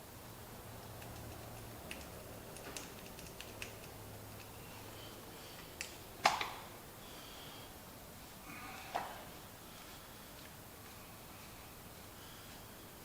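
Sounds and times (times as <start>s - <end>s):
light clicks and taps: 0.9s - 4.6s.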